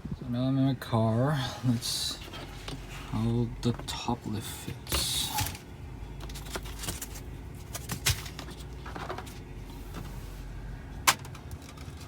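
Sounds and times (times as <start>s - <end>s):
plastic film rustling: 6.2s - 10.0s.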